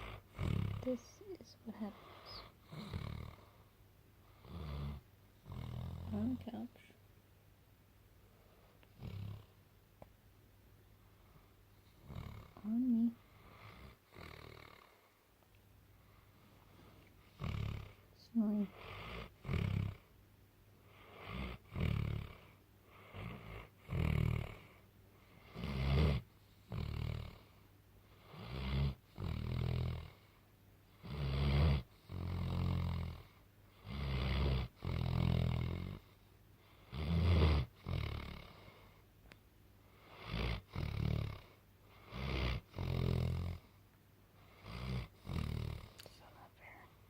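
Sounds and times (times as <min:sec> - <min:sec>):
loud snoring: 0:00.0 - 0:01.2, 0:01.9 - 0:03.6, 0:04.3 - 0:06.6, 0:09.0 - 0:09.5, 0:12.0 - 0:12.8, 0:13.5 - 0:15.0, 0:17.3 - 0:18.0, 0:18.6 - 0:20.1, 0:21.0 - 0:24.8, 0:25.4 - 0:27.6, 0:28.2 - 0:30.3, 0:31.0 - 0:36.1, 0:36.8 - 0:38.8, 0:40.0 - 0:43.7, 0:44.5 - 0:46.0.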